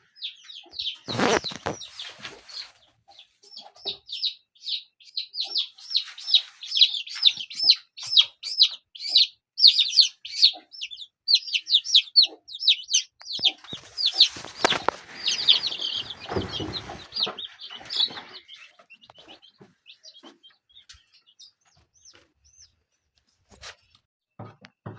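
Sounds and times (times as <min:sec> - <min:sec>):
chicks peeping: 0:00.0 - 0:24.5
rustling clatter: 0:13.6 - 0:18.6.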